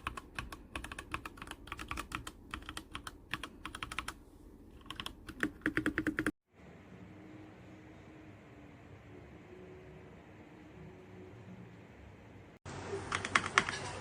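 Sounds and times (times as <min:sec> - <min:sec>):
mechanical keyboard typing: 0:00.0 - 0:06.3, 0:13.1 - 0:14.0.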